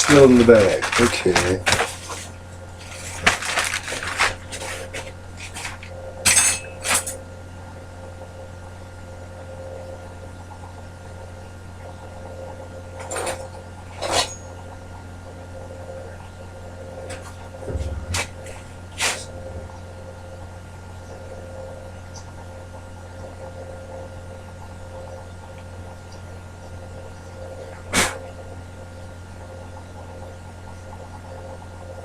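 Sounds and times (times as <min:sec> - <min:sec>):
small hard items clinking: 0:00.0 - 0:01.8
faint steady hum: 0:00.0 - 0:32.0.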